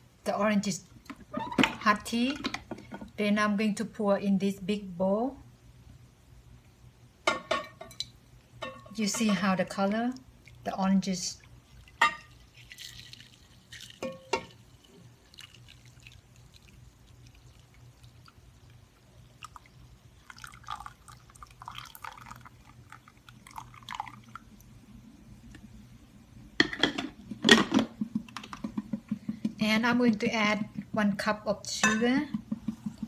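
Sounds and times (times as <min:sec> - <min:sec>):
liquid pouring into a bowl: 0:10.2 - 0:24.8
dishware clattering: 0:31.8 - 0:32.3.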